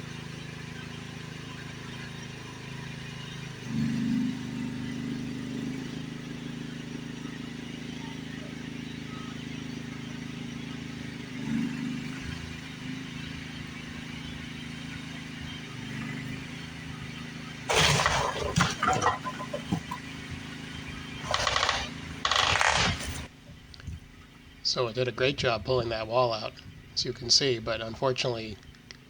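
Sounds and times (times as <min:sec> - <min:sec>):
engine running: 0:00.0 - 0:29.0
wooden wall crashing down: 0:17.7 - 0:20.1, 0:21.2 - 0:23.3.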